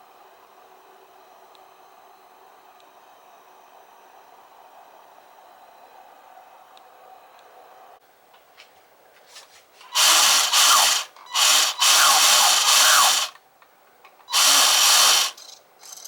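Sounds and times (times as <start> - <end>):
small electric motor whining: 9.9 - 13.4, 14.3 - 15.5.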